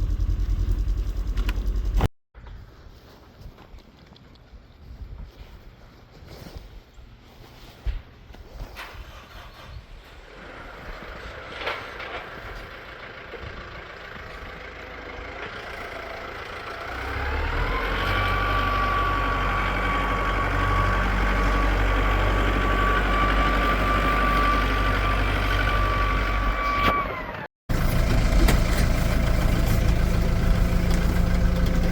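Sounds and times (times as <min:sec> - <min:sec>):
tractor engine revving: 0:09.0 - 0:31.9.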